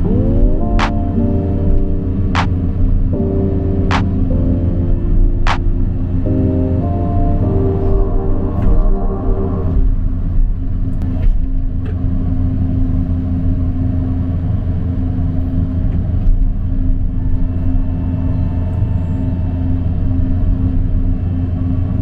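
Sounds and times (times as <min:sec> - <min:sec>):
excavator diesel engine droning: 0:00.0 - 0:10.9.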